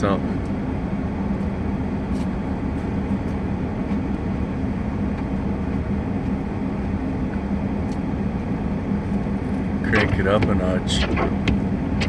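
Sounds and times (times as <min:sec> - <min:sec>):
vehicle engine humming: 0:08.5 - 0:12.0.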